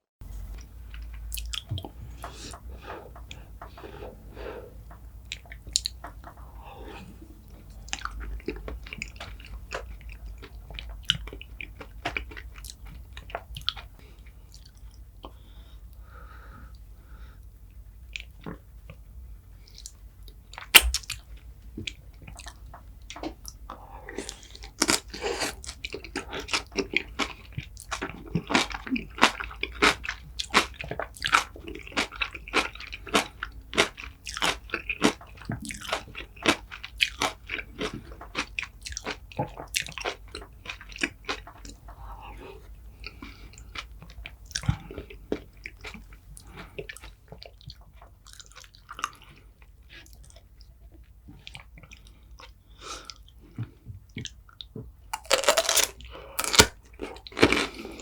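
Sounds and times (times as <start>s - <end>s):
wet chewing and crunching: 0.6s - 4.2s, 7.8s - 15.0s, 19.7s - 41.9s, 43.0s - 53.3s, 54.1s - 58.0s
sharp click: 20.8s - 21.1s.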